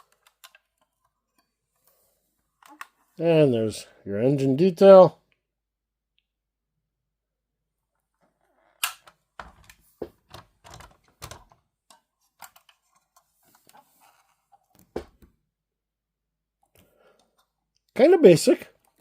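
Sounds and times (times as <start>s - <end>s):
model car parts clicking: 0.0s - 1.4s.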